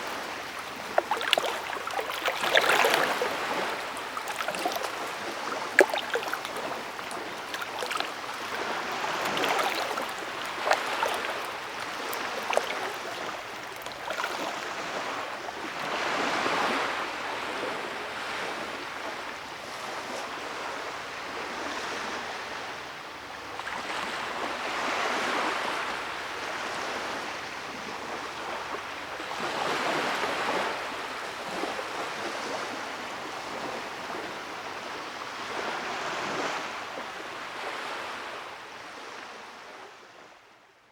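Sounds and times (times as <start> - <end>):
small water splashes: 0.0 - 17.0
creek water over rocks: 0.0 - 17.4.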